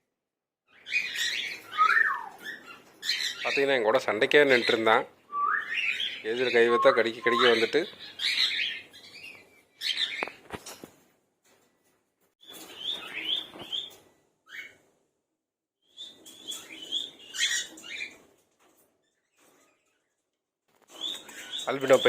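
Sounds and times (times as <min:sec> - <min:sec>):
cockatiels chirping: 0:00.7 - 0:03.8, 0:04.4 - 0:10.4, 0:12.4 - 0:14.8, 0:15.9 - 0:18.3, 0:20.9 - 0:22.0.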